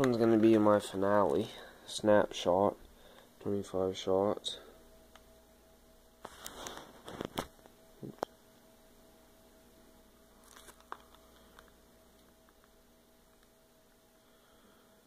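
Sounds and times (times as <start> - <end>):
faint steady hum: 0.0 - 15.0
packaging crinkling: 10.4 - 12.7.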